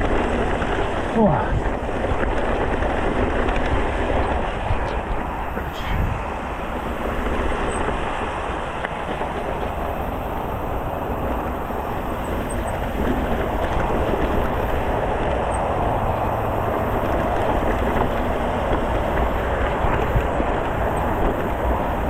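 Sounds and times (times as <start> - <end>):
bike rattling over rocks: 0.0 - 5.5, 6.9 - 22.0
wind buffeting microphone: 0.0 - 22.0.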